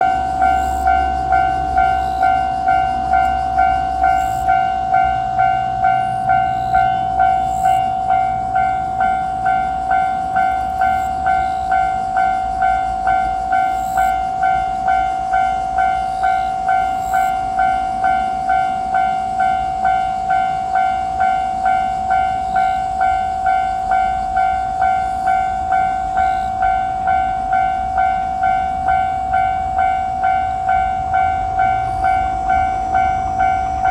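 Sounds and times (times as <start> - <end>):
railroad crossing alarm bell: 0.0 - 33.9.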